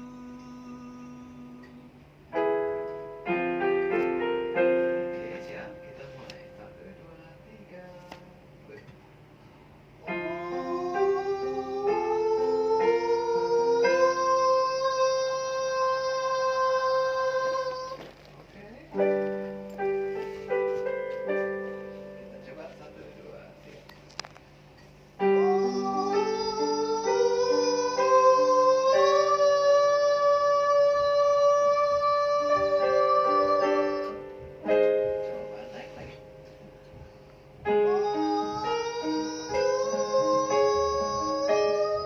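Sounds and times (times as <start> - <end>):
person singing vocal exercise: 0.0 - 2.0, 10.0 - 18.0, 25.2 - 34.3, 37.8 - 42.0
accompanying chords: 0.0 - 8.8, 9.5 - 18.0, 18.9 - 42.0.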